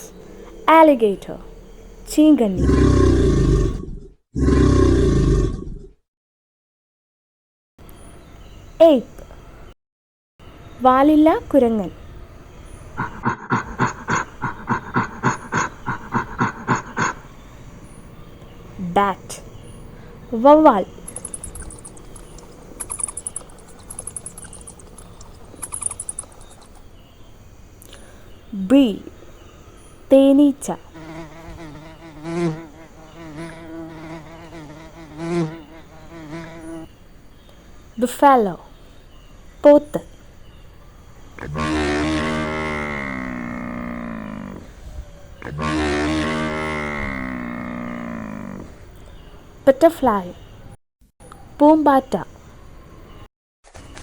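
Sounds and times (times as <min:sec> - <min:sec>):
bat chirping: 0:12.7 - 0:27.0
buffalo mooing: 0:13.0 - 0:17.3, 0:41.4 - 0:44.6, 0:45.4 - 0:48.8.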